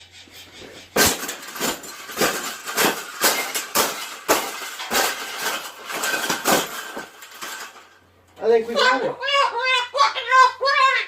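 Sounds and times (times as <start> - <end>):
wire cage clanking and rattling: 0.8 - 8.1.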